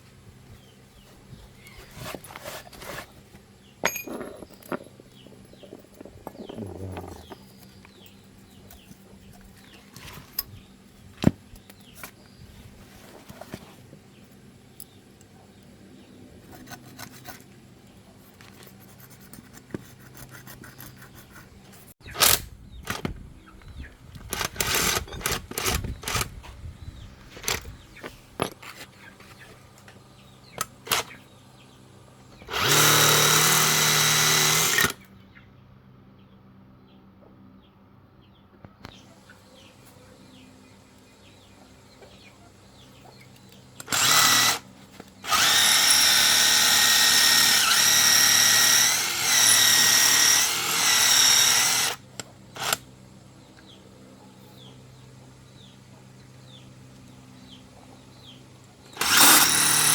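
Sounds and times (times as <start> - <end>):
tools knocking on metal: 3.8 - 5.0
power tool running: 24.3 - 26.3, 30.9 - 31.1, 32.4 - 35.0, 43.8 - 52.8, 59.0 - 59.9.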